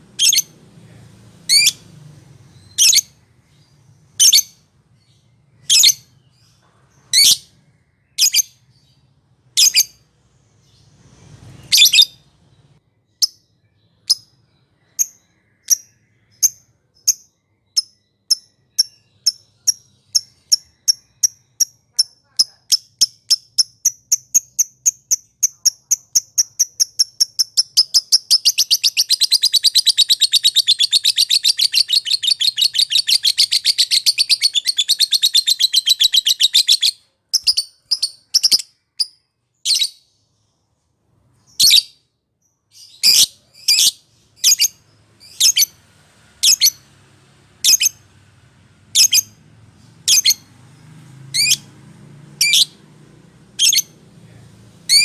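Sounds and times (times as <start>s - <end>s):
lovebird chattering trill: 14.9s - 38.7s.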